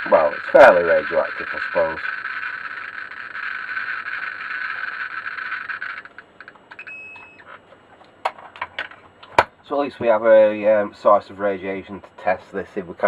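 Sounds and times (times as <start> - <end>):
geiger counter clicking rapidly: 0.0 - 6.6.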